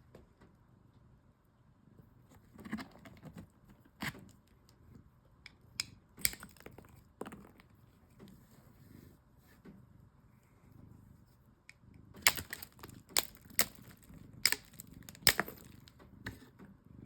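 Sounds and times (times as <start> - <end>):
packaging rustling: 12.2 - 15.9
stone slabs knocking together: 12.2 - 15.9.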